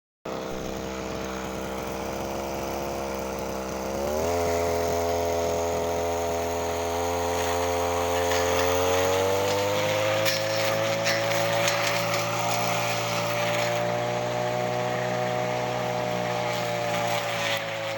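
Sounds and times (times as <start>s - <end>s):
brush cutter engine running: 0.3s - 17.9s.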